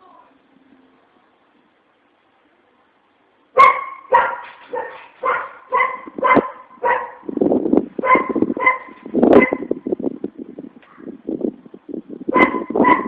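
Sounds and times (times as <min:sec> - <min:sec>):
dog barking: 0:03.6 - 0:07.3, 0:08.0 - 0:09.7, 0:12.3 - 0:13.0.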